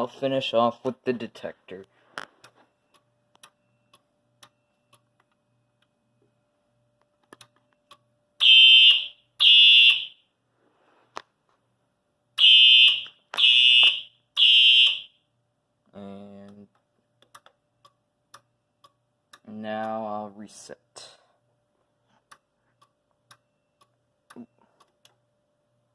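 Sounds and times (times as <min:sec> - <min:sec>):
fire alarm horn blasts: 0:08.4 - 0:10.3, 0:12.4 - 0:15.3.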